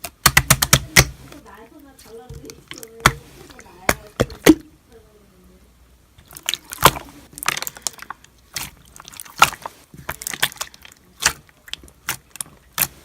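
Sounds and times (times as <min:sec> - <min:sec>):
sharp clicks and taps: 0:00.0 - 0:01.1.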